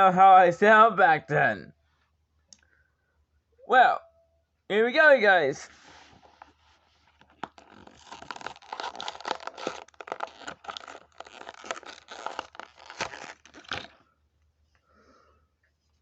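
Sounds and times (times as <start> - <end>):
plastic and card packaging tearing: 7.2 - 14.0.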